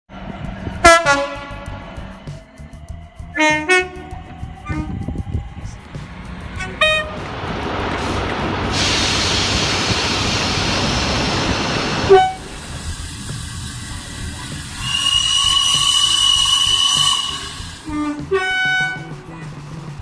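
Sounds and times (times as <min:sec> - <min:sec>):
train rushing past: 0:00.1 - 0:20.0
train horn: 0:00.8 - 0:01.9, 0:03.4 - 0:05.0, 0:06.6 - 0:07.2, 0:12.0 - 0:12.6, 0:14.8 - 0:19.1.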